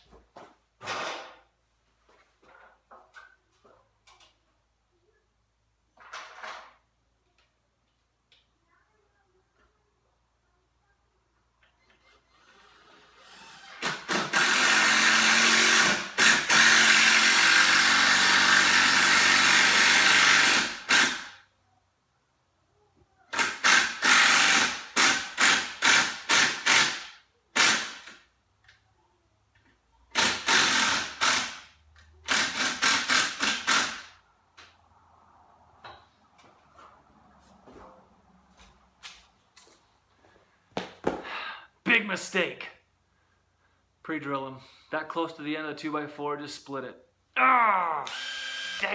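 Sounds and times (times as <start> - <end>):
cordless driver driving screws: 11.9 - 21.4, 23.4 - 28.2, 30.1 - 34.1, 48.1 - 48.9.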